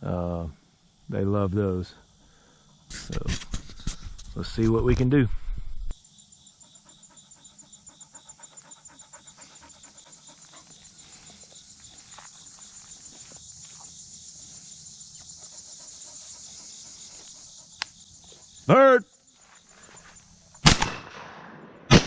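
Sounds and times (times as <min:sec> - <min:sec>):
insects pulsing: 0:00.0 - 0:21.9
dog panting: 0:06.5 - 0:18.4.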